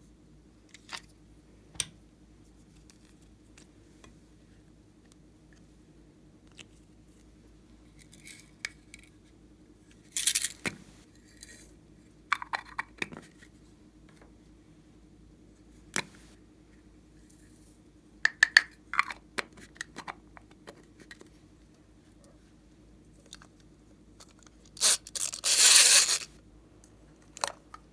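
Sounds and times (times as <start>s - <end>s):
material crinkling: 24.8s - 26.3s.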